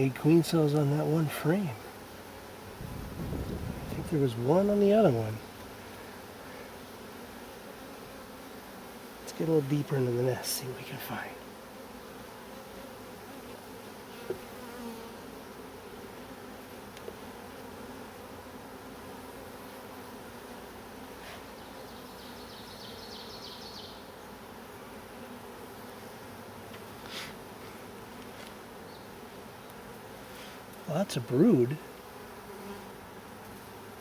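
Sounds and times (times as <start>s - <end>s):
bee colony humming: 0.0s - 34.0s
faint clicks of hive frames: 0.2s - 1.1s, 5.4s - 7.3s, 12.8s - 15.2s, 16.1s - 17.7s, 26.5s - 31.2s, 32.3s - 34.0s.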